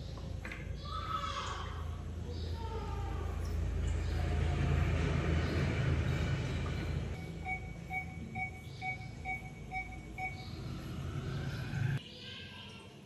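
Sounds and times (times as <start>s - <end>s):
low steady hum: 0.0s - 12.0s
medical monitor beeps: 7.2s - 10.9s.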